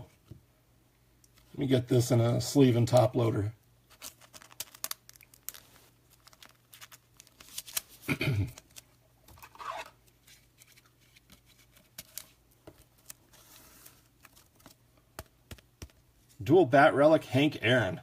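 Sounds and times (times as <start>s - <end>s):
plastic sleeve rustling: 3.9s - 16.4s.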